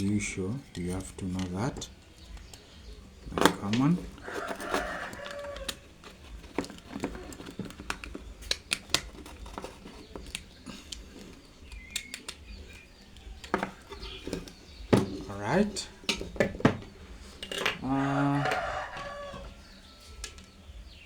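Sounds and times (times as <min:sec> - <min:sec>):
clicks and taps of wiring a switch: 0:11.7 - 0:14.6.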